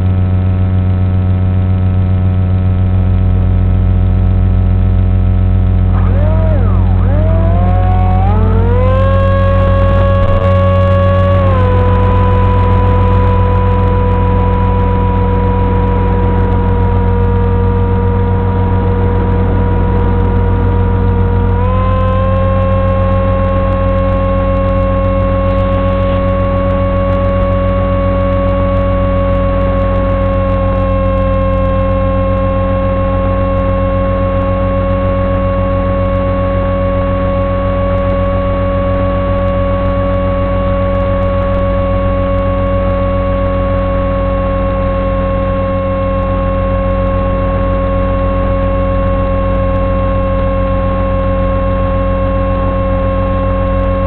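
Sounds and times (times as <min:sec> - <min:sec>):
low hum: 0:00.0 - 0:54.0
electric motor and propeller whine: 0:05.4 - 0:43.6.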